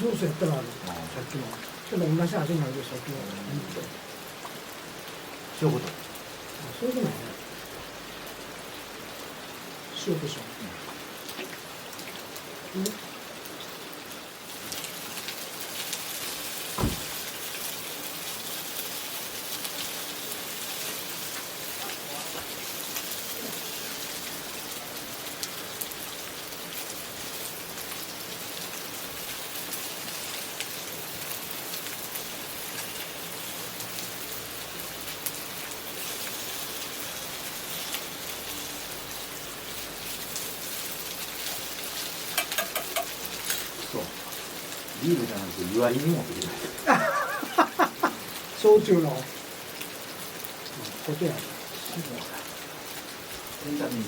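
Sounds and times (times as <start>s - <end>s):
rain falling and pattering: 0.0s - 54.0s
sharp knock: 16.8s - 17.2s.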